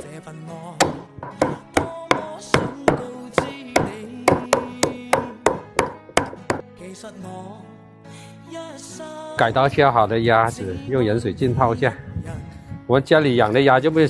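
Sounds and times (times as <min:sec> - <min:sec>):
background music: 0:00.0 - 0:14.0
cleaver chopping on board: 0:00.8 - 0:06.6.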